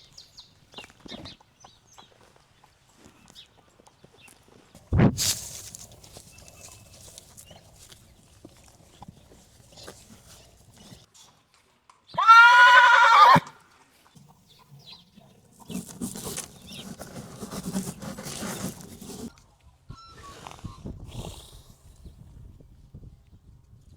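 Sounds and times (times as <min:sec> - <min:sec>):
soft shuffling: 0:04.5 - 0:11.1, 0:15.4 - 0:19.3
horse whinnying: 0:12.1 - 0:13.6.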